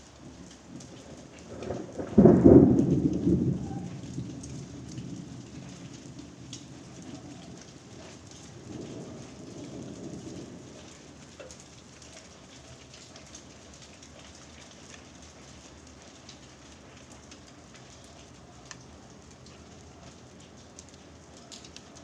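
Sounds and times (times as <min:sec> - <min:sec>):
rain falling: 0:00.0 - 0:22.0
low thunder rumble: 0:00.2 - 0:11.4.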